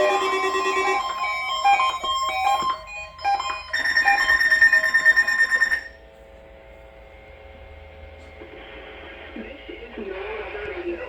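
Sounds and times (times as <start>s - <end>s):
pulsing high-pitched tone: 0.0s - 6.0s.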